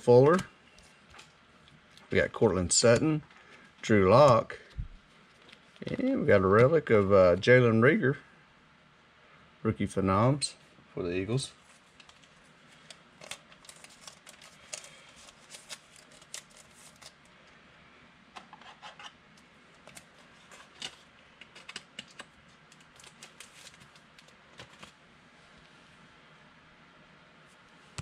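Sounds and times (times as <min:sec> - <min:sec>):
trading cards being handled: 0:00.0 - 0:07.2, 0:11.6 - 0:17.2.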